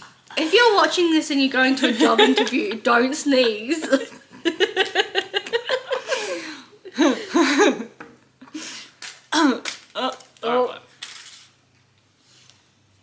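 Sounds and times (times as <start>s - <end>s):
person laughing: 1.8s - 3.0s, 3.8s - 7.9s.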